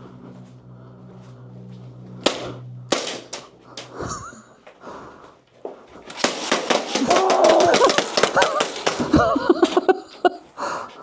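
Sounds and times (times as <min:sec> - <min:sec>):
airsoft guns firing: 0:02.3 - 0:03.9, 0:06.1 - 0:10.0.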